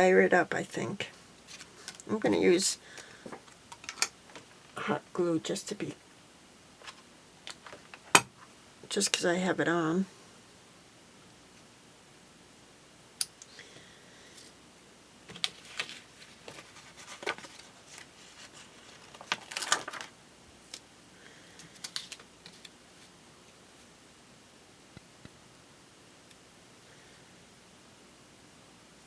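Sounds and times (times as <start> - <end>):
paper rustling: 6.8 - 8.5, 15.3 - 20.2, 21.6 - 23.1.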